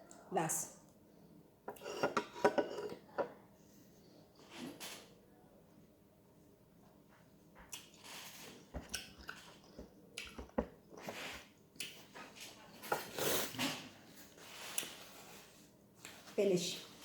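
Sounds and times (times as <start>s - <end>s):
person chewing and lip smacking: 7.7s - 8.1s, 8.8s - 10.6s, 11.8s - 12.1s.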